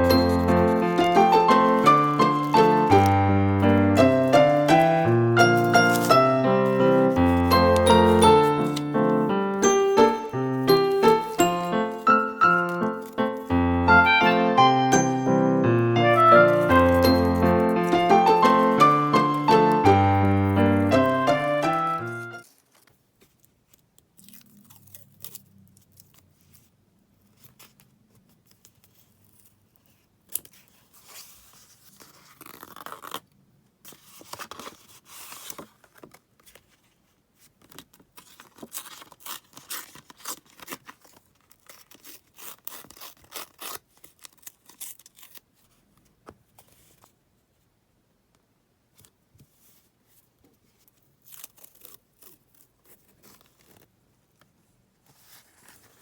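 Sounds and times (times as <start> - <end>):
paper tearing: 0.0 - 9.2, 16.4 - 23.0, 23.7 - 26.6, 28.6 - 33.3, 37.7 - 45.8, 51.2 - 53.9
paper rustling: 0.0 - 47.2, 48.9 - 56.0.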